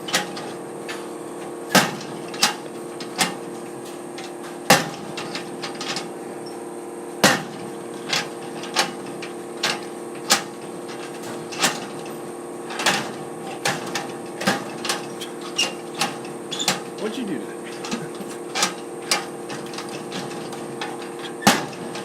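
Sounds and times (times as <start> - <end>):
steady hum: 0.0 - 22.0
locker door banging: 1.7 - 3.5, 7.2 - 17.1, 17.7 - 22.0.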